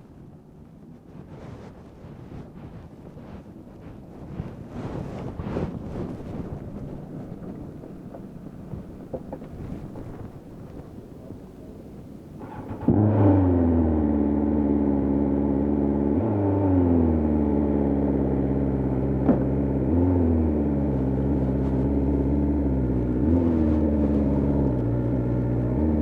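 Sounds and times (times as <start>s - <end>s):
motorcycle engine starting and idling: 6.5s - 26.0s.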